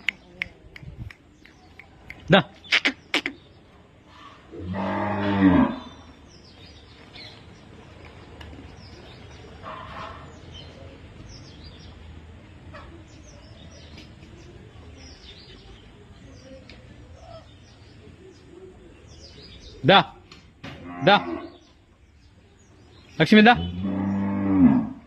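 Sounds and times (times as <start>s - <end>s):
birds chirping: 0.0s - 25.0s
cow mooing: 4.6s - 6.0s, 23.6s - 25.0s.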